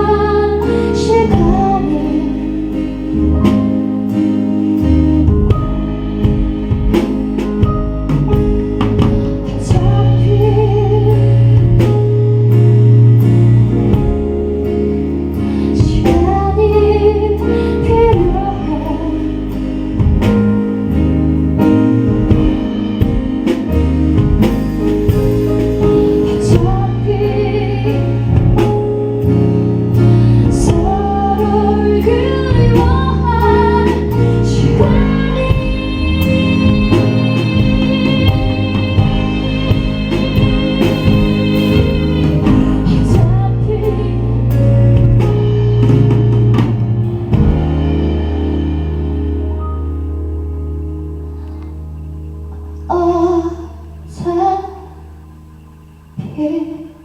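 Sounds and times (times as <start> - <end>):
person singing: 0.0 - 3.4, 30.0 - 44.8
live band playing: 0.0 - 57.0.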